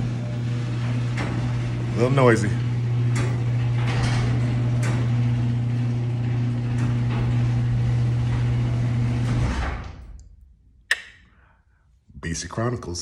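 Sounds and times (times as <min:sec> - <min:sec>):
garage door rattling: 0:00.0 - 0:10.2
garage door opener motor humming: 0:00.0 - 0:10.5
sharp click: 0:10.9 - 0:11.3.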